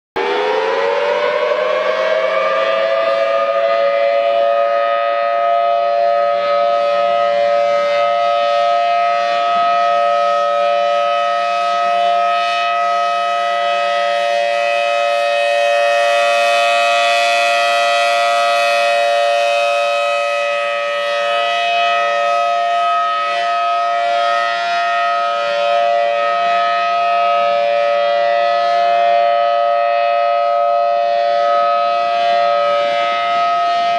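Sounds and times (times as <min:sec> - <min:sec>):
outdoor warning siren wailing: 0:00.2 - 0:33.9.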